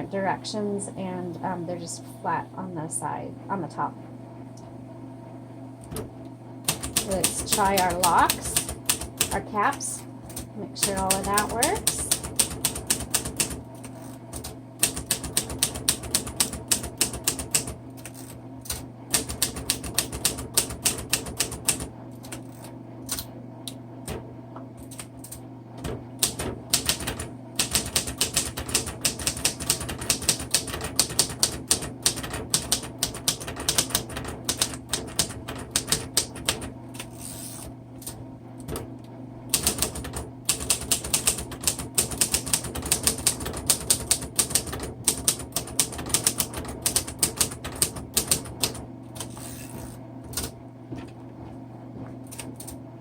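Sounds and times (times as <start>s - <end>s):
manual typewriter typing: 6.6s - 23.3s, 24.8s - 38.8s, 39.5s - 50.5s, 52.3s - 52.8s.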